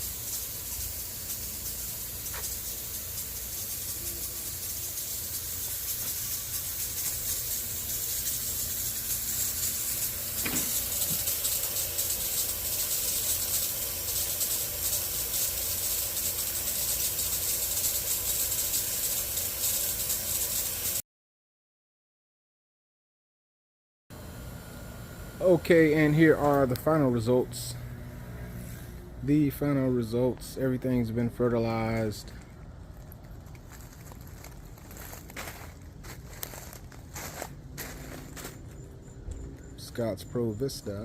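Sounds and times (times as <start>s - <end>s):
lawn sprinklers spraying water: 0.0s - 21.0s, 31.4s - 38.8s.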